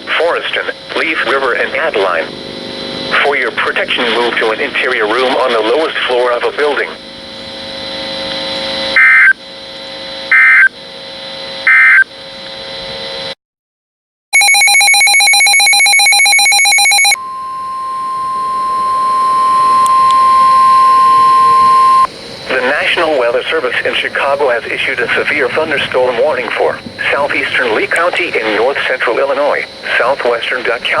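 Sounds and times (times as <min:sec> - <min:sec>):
harsh pulsing buzz: 0:00.0 - 0:11.8, 0:16.8 - 0:31.0
steady alarm tone: 0:00.1 - 0:09.4, 0:14.4 - 0:31.0
data-burst squawks: 0:09.0 - 0:09.3, 0:10.3 - 0:10.7
humming carrier: 0:17.2 - 0:30.0.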